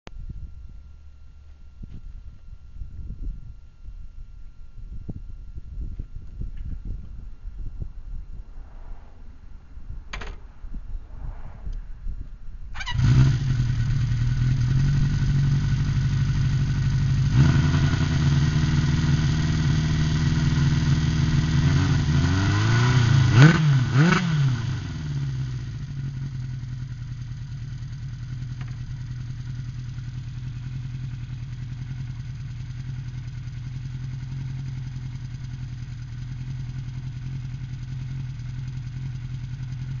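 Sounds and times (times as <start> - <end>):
motorcycle engine starting and idling: 12.7 - 40.0
engine revving: 12.8 - 25.6.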